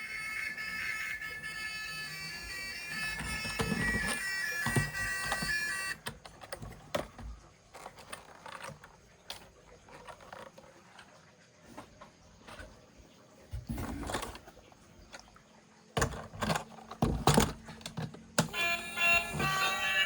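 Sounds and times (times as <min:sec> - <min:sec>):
buzzy electronic tune: 0:18.6 - 0:20.0.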